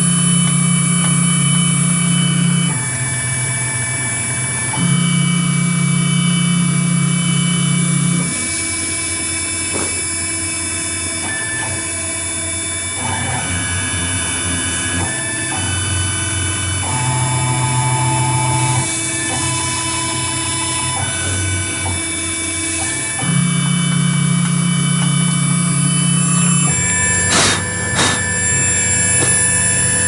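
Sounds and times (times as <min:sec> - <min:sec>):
machine high whine: 0:00.0 - 0:30.0.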